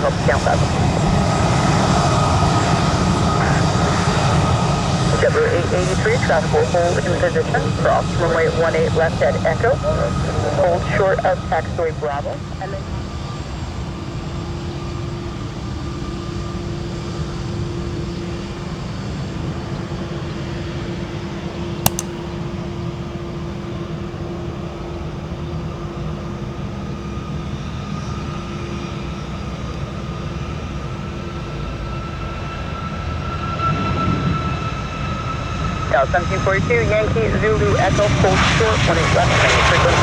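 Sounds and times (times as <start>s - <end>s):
sharp click: 21.9s - 22.4s
jet engines with turbine whine: 24.7s - 40.0s.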